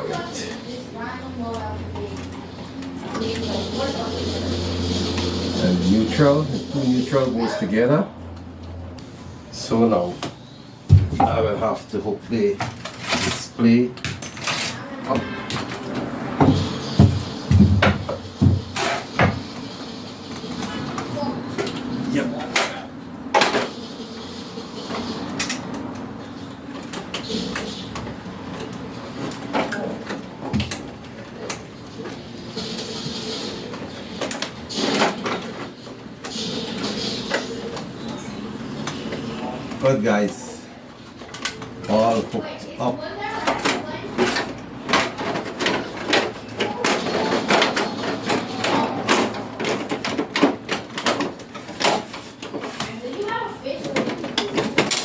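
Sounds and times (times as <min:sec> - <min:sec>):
plastic parts clicking and knocking: 0:43.4 - 0:52.9.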